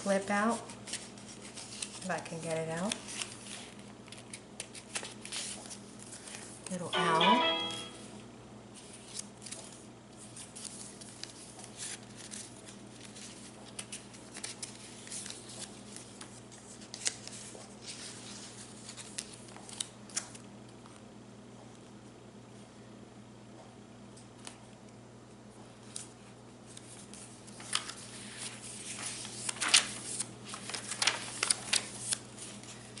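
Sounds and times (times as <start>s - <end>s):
paper rustling and crinkling: 0.0s - 6.7s, 8.8s - 20.4s, 25.8s - 33.0s.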